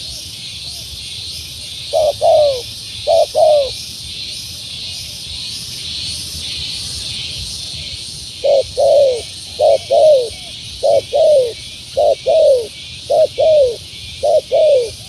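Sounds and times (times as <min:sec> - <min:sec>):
high insect-like hiss: 0:00.0 - 0:15.0
dove cooing: 0:01.8 - 0:03.8, 0:08.4 - 0:15.0.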